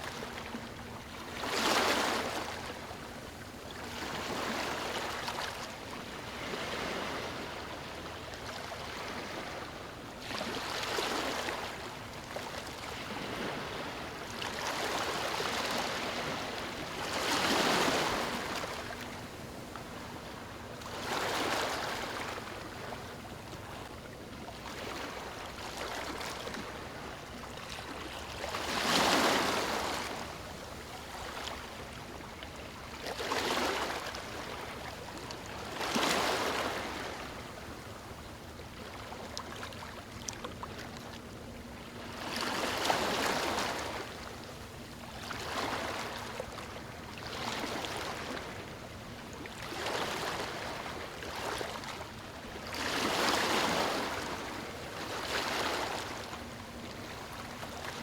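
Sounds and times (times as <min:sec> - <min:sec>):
sea waves breaking on beach: 0:28.5 - 0:30.2.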